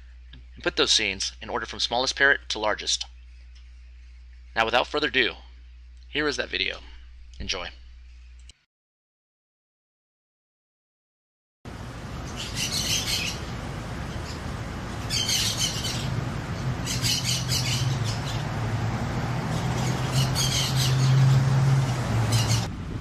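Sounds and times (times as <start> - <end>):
steady low rumble: 0.0 - 8.4, 11.7 - 23.0
parrots squawking: 12.1 - 18.6, 19.4 - 22.7.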